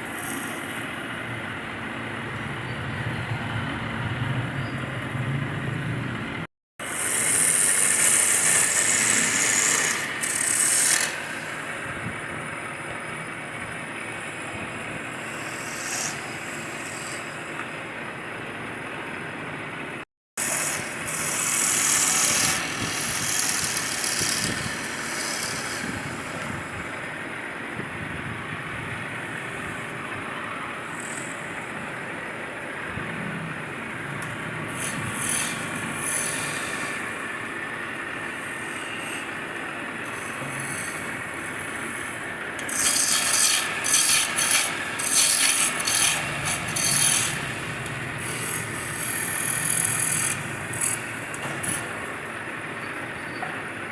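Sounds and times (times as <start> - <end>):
turning tool cutting wood: 0.0 - 1.0, 6.8 - 11.8, 15.1 - 17.5, 20.4 - 26.9, 34.7 - 37.3, 38.2 - 52.2
wood lathe running: 0.2 - 0.9, 6.9 - 11.8, 15.2 - 17.4, 20.4 - 26.5, 40.1 - 52.2.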